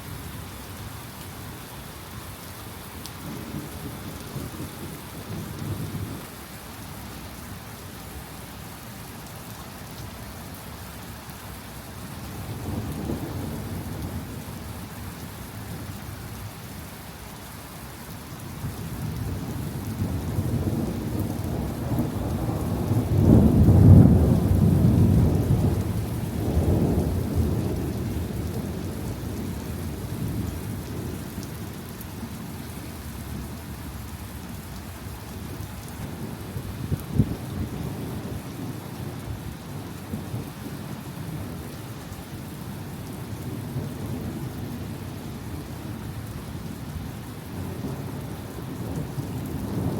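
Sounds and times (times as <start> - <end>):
heavy rain falling: 0.0 - 49.9
thunder rumbling: 19.0 - 32.3, 36.0 - 39.4, 47.5 - 49.9.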